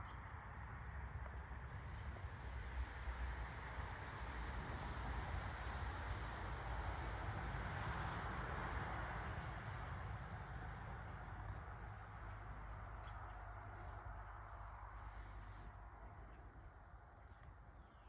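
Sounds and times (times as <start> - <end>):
insect chirps: 0.0 - 18.0
insects trilling: 7.6 - 18.0.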